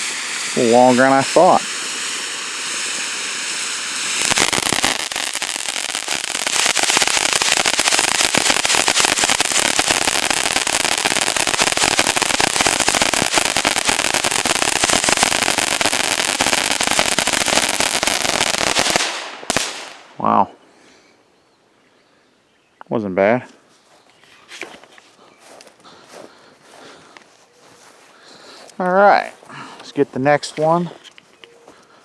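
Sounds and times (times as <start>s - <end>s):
firework fountain hissing: 0.0s - 20.1s
rapid firework crackling: 0.0s - 20.1s.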